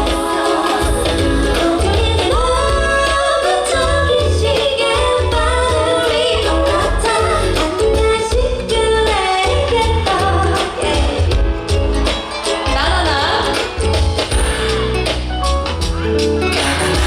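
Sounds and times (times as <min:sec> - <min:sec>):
woman singing: 0:00.0 - 0:11.6, 0:12.7 - 0:13.7
pop backing track with bass beat: 0:00.0 - 0:17.0.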